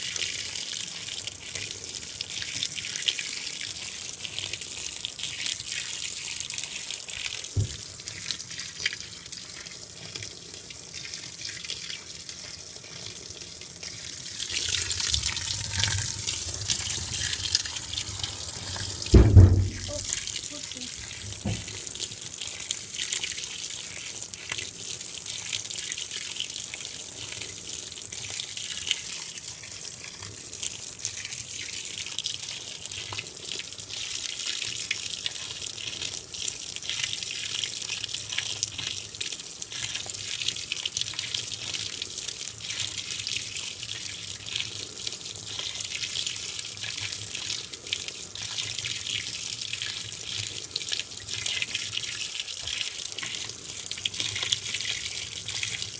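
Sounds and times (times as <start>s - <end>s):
water pouring into washing machine: 13.8s - 27.1s, 36.3s - 55.9s.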